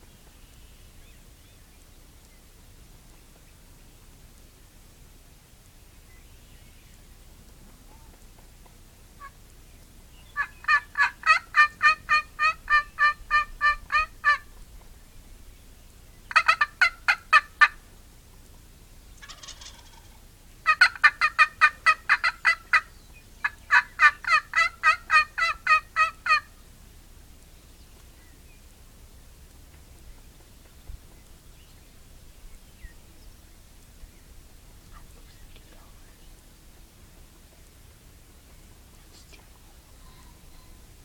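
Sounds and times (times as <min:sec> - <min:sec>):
turkeys gobbling: 0:07.9 - 0:09.4, 0:10.3 - 0:14.6, 0:16.3 - 0:17.8, 0:19.2 - 0:26.6, 0:34.8 - 0:35.3.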